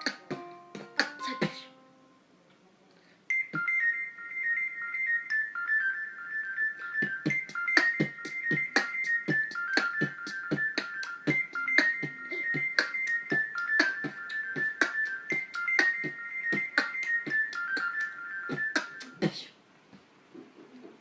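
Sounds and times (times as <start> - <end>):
electronic beat: 0.0 - 1.7, 7.0 - 19.4
electronic phone ringtone melody: 3.3 - 19.2.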